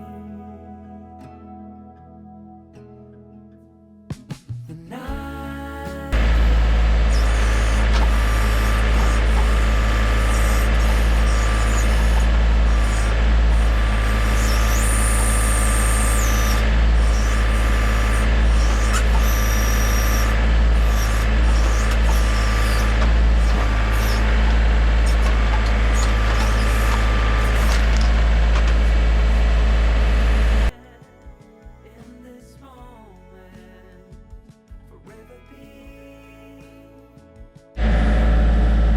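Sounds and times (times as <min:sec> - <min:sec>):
tractor diesel engine running: 0:06.1 - 0:30.7, 0:37.8 - 0:38.9
high hydraulic whines: 0:06.2 - 0:30.7, 0:37.8 - 0:38.9.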